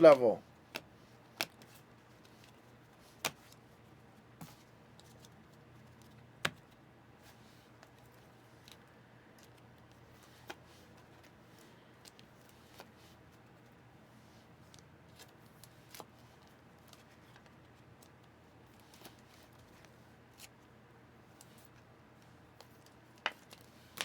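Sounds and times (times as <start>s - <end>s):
faint steady hum: 0.0s - 24.0s
trading cards clicking and snapping: 0.7s - 2.6s.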